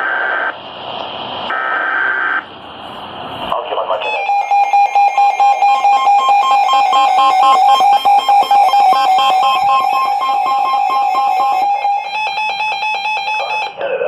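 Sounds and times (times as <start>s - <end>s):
electronic alert tone: 4.0s - 13.8s.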